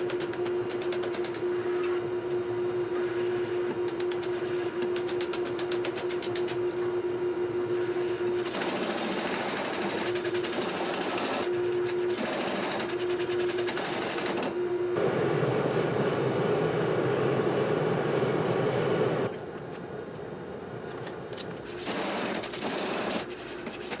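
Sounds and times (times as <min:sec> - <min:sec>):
machine mechanical strokes: 0:21.6 - 0:24.0.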